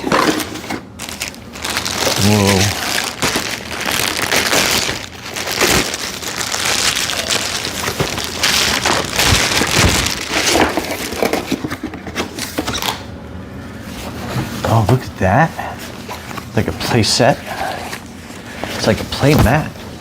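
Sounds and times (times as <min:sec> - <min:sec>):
packaging crinkling: 0:00.0 - 0:12.9.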